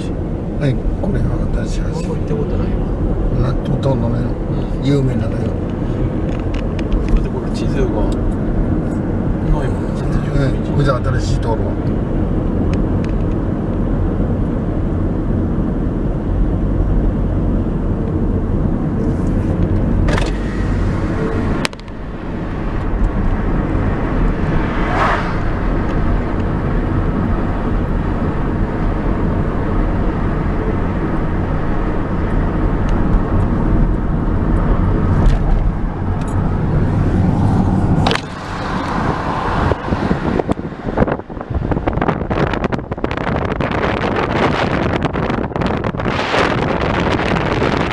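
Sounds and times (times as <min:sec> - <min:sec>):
car road noise rumble: 0:00.0 - 0:47.9.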